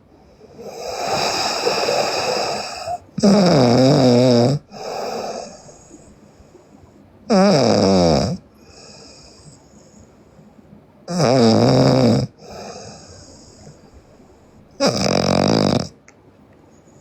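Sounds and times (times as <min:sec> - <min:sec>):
woman snoring loudly: 0:00.6 - 0:05.8, 0:07.3 - 0:08.4, 0:11.1 - 0:13.8, 0:14.8 - 0:16.0.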